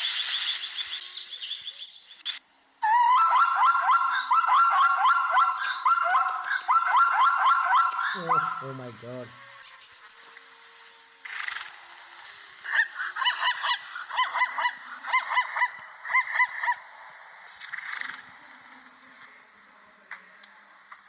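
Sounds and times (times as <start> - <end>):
zebra honking barks: 4.1 - 9.4, 12.6 - 16.9.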